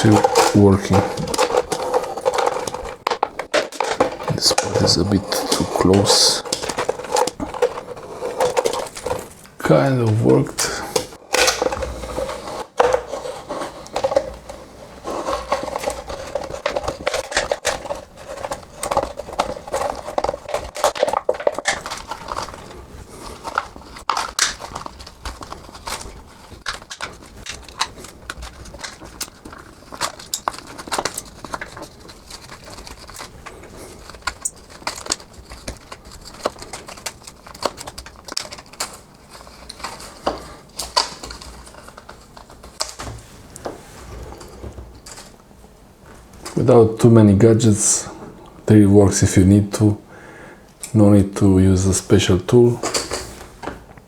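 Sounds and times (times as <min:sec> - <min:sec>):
knife cutting plastic: 0:00.0 - 0:43.1
plastic bottle crinkling: 0:00.0 - 0:47.2.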